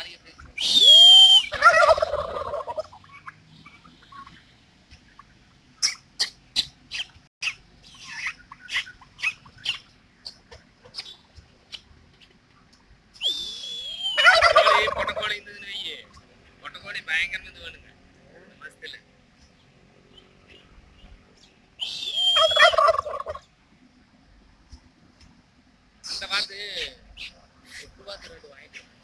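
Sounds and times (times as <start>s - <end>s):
turkey gobbling: 0.4s - 12.3s, 13.2s - 16.3s, 21.8s - 23.5s.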